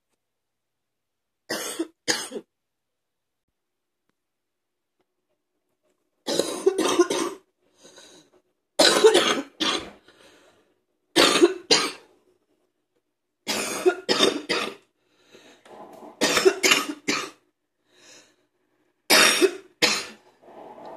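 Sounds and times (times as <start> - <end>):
woman coughing: 1.5 - 2.5, 6.3 - 7.4, 8.8 - 9.9, 11.2 - 12.0, 13.5 - 14.8, 16.2 - 17.4
faint breaths: 7.6 - 8.4, 10.0 - 10.8, 14.9 - 16.2, 17.7 - 19.1.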